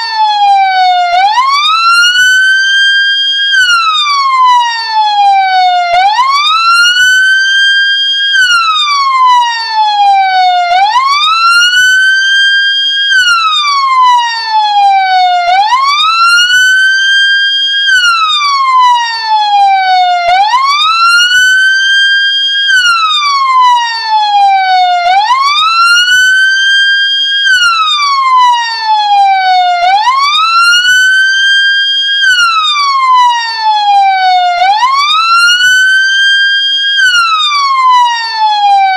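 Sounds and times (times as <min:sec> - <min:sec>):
ambulance siren wailing: 0:00.0 - 0:38.9.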